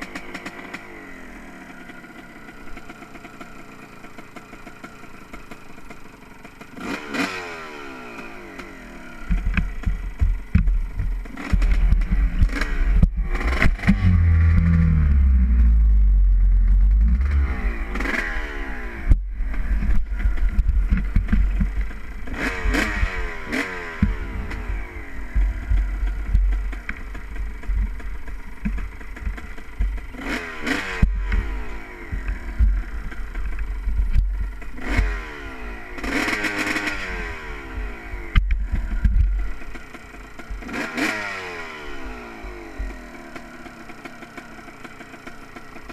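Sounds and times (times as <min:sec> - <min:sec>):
two-stroke motorcycle engine revving: 0:00.0 - 0:45.9
heavy low rumble: 0:10.0 - 0:29.4.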